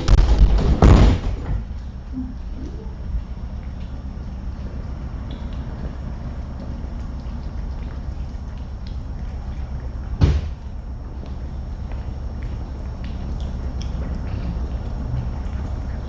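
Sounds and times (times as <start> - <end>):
loud thud: 0.0 - 1.6, 10.2 - 10.6.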